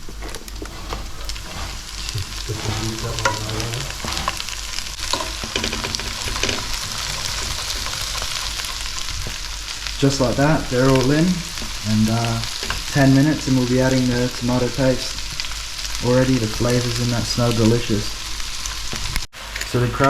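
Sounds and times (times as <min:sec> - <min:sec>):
crab shells clicking and knocking: 0:00.0 - 0:02.6, 0:03.2 - 0:10.0, 0:12.5 - 0:13.0
frying sizzle: 0:00.0 - 0:20.0.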